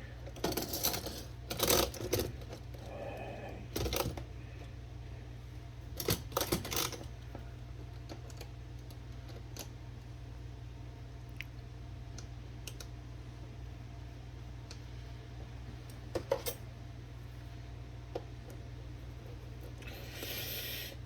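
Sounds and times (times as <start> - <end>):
metallic clicks and clatter of parts: 0.3 - 2.7, 6.0 - 7.2, 16.0 - 16.6.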